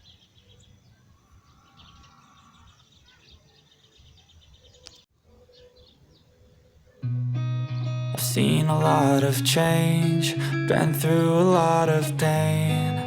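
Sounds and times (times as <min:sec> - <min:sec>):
faint birds chirping: 0:00.0 - 0:08.6.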